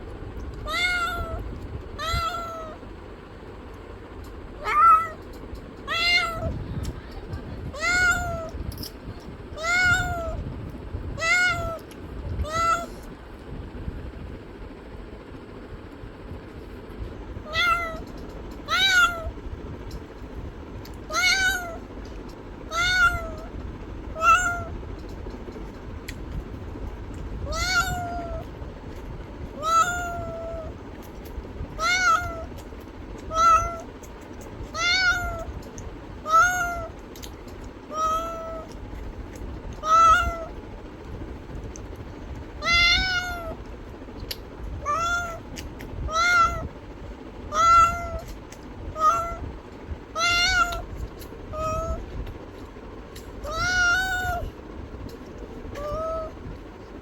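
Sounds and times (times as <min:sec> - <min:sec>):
cat meowing: 0:00.6 - 0:02.9, 0:04.6 - 0:06.6, 0:07.2 - 0:08.7, 0:09.6 - 0:10.4, 0:11.2 - 0:13.2, 0:17.4 - 0:19.4, 0:20.8 - 0:21.9, 0:22.6 - 0:24.8, 0:27.1 - 0:28.5, 0:29.5 - 0:31.1, 0:31.7 - 0:38.8, 0:39.7 - 0:40.6, 0:42.6 - 0:43.7, 0:44.7 - 0:46.8, 0:47.5 - 0:52.2, 0:53.2 - 0:54.6, 0:55.7 - 0:56.6.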